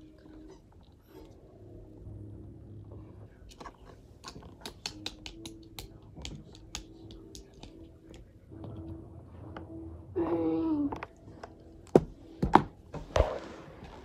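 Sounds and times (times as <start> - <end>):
low hum: 0.0 - 4.6.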